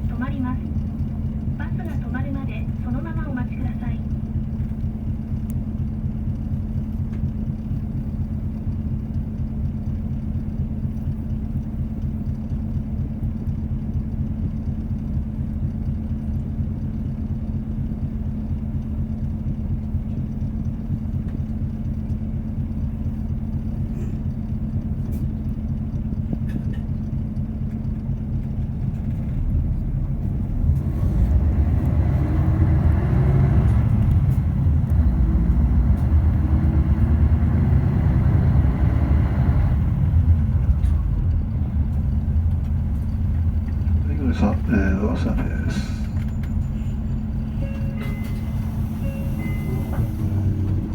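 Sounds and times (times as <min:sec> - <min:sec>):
bus engine humming: 0:00.0 - 0:50.9.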